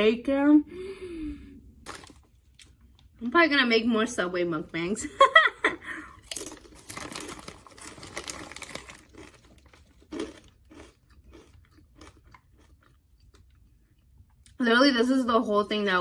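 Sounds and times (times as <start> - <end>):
person chewing crunchy food: 6.2 - 14.5.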